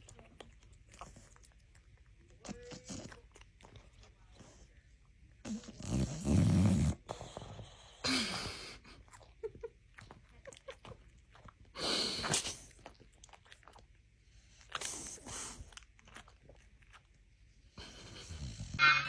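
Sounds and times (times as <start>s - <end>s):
dog making throaty vocal sounds: 5.4s - 8.6s.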